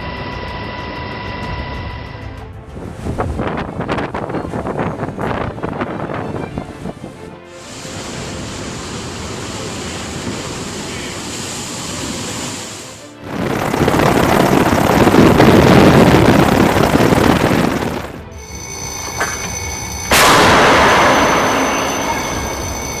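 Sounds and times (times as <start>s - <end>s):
background music: 0.0s - 23.0s
loud rushing roar: 0.0s - 23.0s
blast: 16.8s - 23.0s
military weapons fire: 18.9s - 23.0s.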